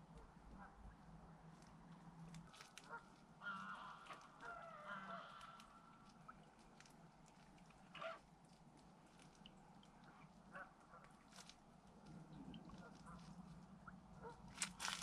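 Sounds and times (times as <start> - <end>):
geese honking: 2.9 - 5.8.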